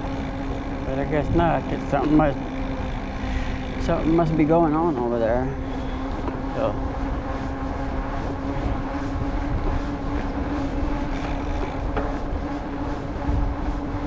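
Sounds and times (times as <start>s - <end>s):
wind on microphone: 6.0s - 14.0s
bike tyres humming on wet pavement: 9.4s - 13.4s.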